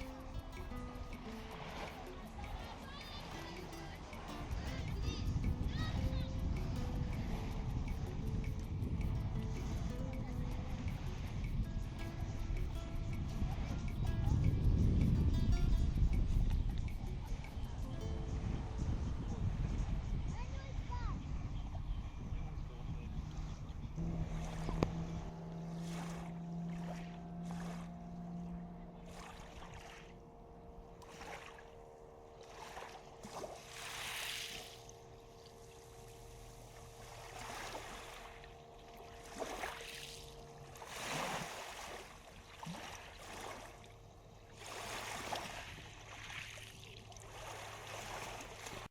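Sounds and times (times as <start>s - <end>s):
small waves lapping on stony shore: 0.0s - 14.0s, 23.2s - 48.9s
low engine hum: 0.0s - 48.9s.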